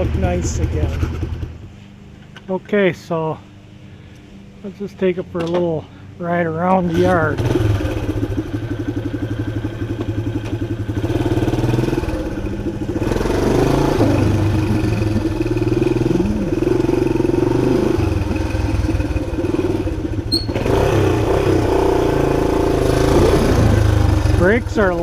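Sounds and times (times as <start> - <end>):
motorcycle engine revving: 0.0 - 1.7, 6.7 - 25.0.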